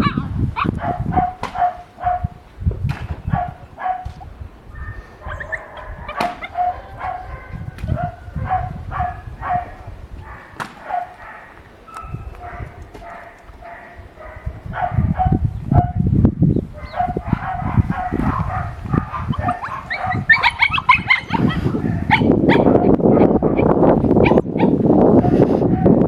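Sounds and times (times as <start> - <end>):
dogs barking and yipping: 0.0 - 2.4, 3.2 - 16.1, 16.7 - 26.0
high yelps: 4.8 - 15.3, 16.8 - 24.8.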